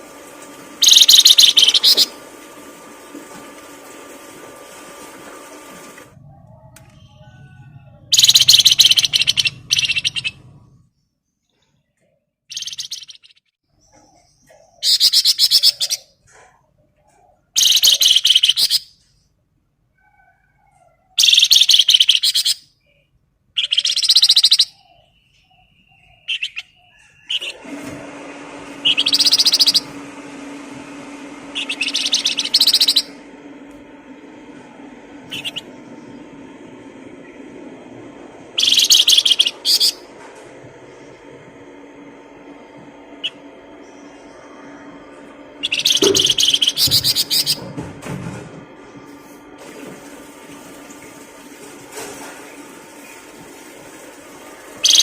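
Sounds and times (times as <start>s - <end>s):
songbird chattering song: 0.8s - 2.1s, 8.1s - 10.4s, 12.5s - 16.1s, 17.6s - 18.9s, 21.2s - 27.5s, 28.9s - 29.9s, 31.6s - 33.1s, 38.6s - 40.0s, 45.6s - 47.6s
steady low hum: 28.6s - 51.7s.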